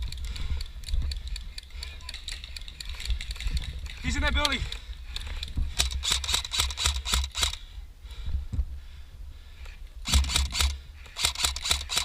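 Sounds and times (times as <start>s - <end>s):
airsoft gun shots: 10.1s - 12.0s.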